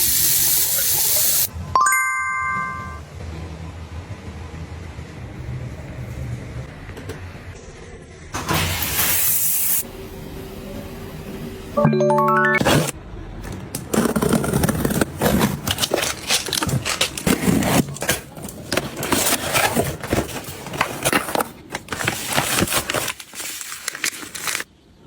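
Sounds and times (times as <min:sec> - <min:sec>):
household items scraping and rustling: 0:12.6 - 0:24.7.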